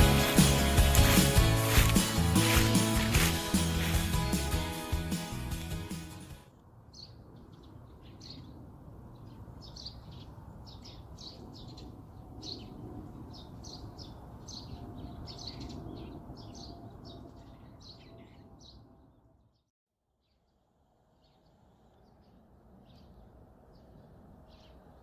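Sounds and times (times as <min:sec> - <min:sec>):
small birds chirping: 0:06.9 - 0:19.2, 0:20.2 - 0:25.0.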